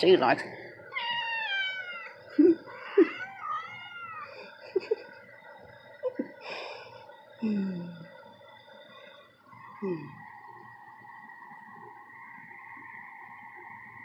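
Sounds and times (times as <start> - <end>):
cat meowing: 0.9 - 4.3.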